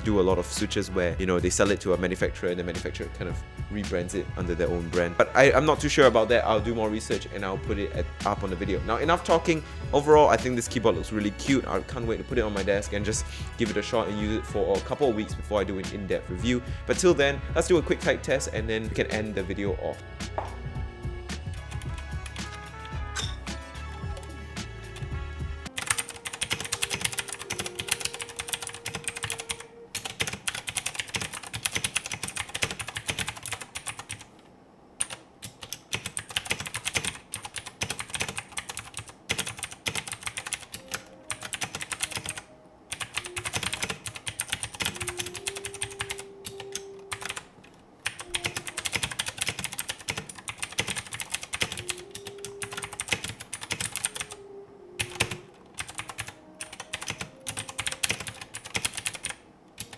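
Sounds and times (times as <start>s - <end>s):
mechanical keyboard typing: 25.7s - 34.3s, 35.0s - 54.4s, 55.0s - 59.9s.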